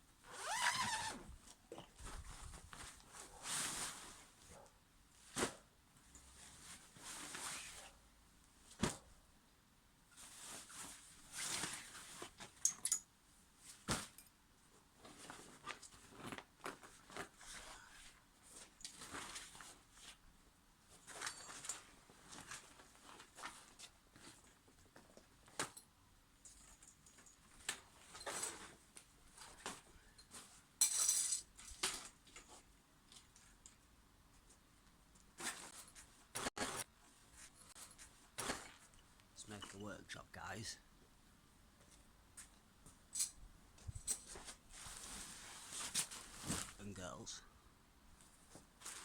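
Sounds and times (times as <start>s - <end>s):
rustling: 0.2s - 8.0s, 34.3s - 39.8s, 43.7s - 47.4s, 48.1s - 49.0s
small metallic clinks: 12.6s - 13.1s
scraping rustle: 43.8s - 46.9s.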